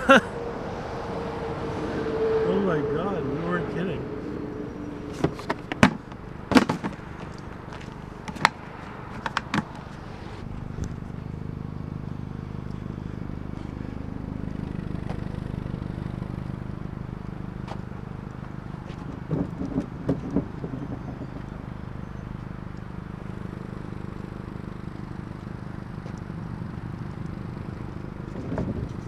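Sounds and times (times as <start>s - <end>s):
knocks and clatters: 5.1s - 10.0s, 18.4s - 22.5s, 28.3s - 29.0s
low rumble: 18.2s - 23.4s.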